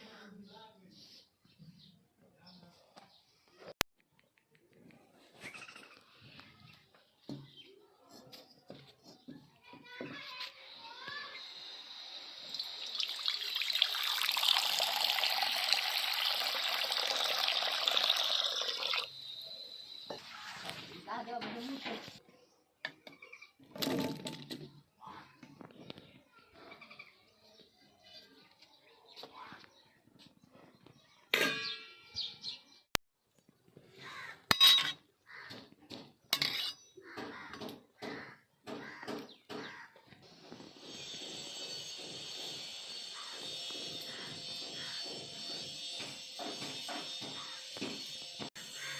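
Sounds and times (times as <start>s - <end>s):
running water pouring: 12.2s - 19.1s
metal utensil clanging: 34.5s - 35.0s.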